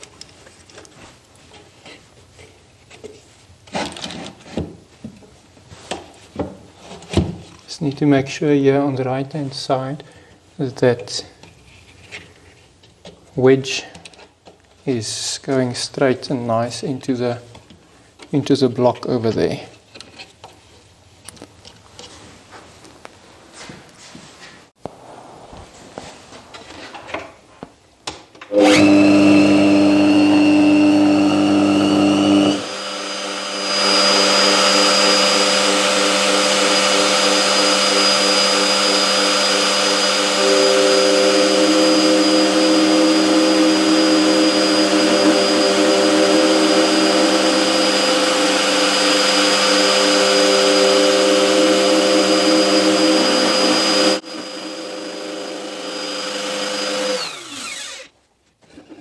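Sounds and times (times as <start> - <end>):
router whining cutting wood: 28.5 - 58.1.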